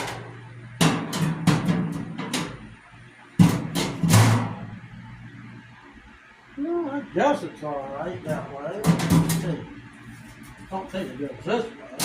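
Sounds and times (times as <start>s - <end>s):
metal tray clanking against tank: 8.3s - 9.6s.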